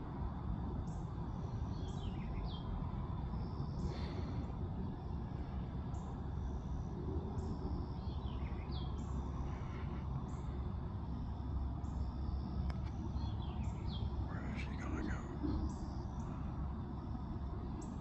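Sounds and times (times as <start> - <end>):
low outdoor background rumble: 0.0 - 18.0
small bird chirping: 11.8 - 16.4.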